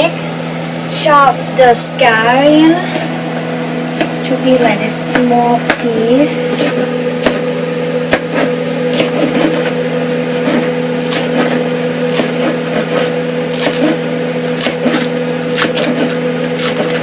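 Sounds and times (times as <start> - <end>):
steady hum: 0.0 - 17.0
knife chopping on cutting board: 4.0 - 7.5, 8.1 - 17.0.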